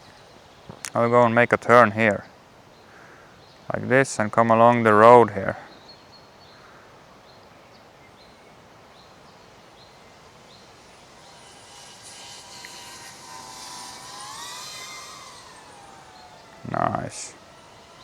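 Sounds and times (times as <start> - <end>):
drone propellers whining: 9.3 - 18.0.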